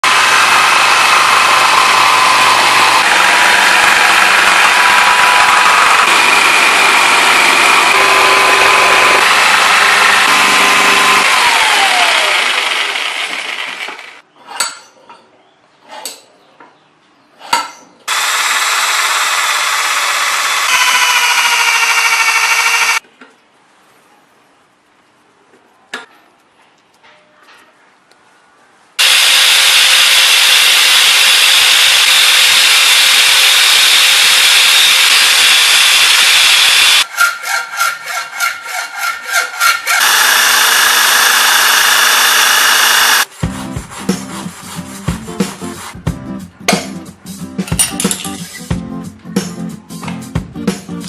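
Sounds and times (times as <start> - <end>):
seed-shelling machine running: 0.0 - 14.2, 18.1 - 23.0, 29.0 - 37.1, 39.9 - 43.3.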